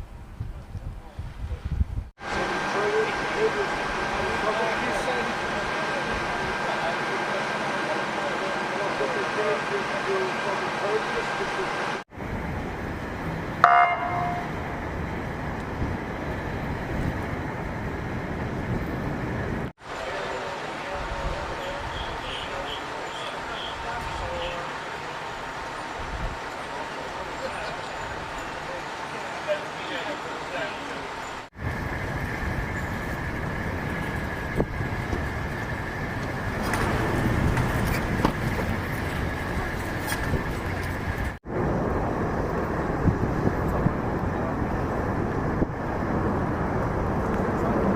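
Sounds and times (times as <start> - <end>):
street noise rumble: 0.0 - 47.9
engines idling: 2.2 - 47.9
vehicle horn toot: 13.6 - 14.6, 21.6 - 24.7.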